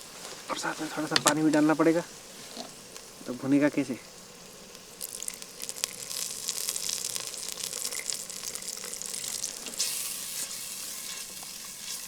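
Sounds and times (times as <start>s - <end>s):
food sizzling in oil: 0.0s - 12.0s
crackling pops: 0.4s - 2.0s.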